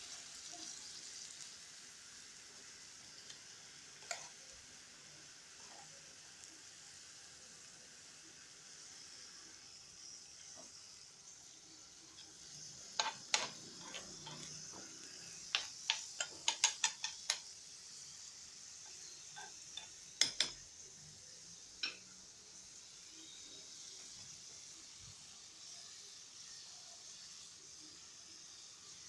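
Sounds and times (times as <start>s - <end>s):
meat sizzling in a dish: 0.0s - 29.0s
utensil tapping a dish: 15.5s - 17.4s, 20.2s - 20.6s.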